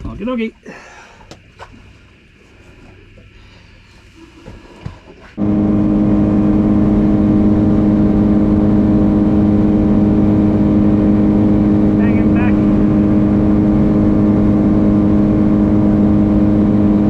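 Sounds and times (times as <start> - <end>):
outboard motor running: 5.1 - 17.0.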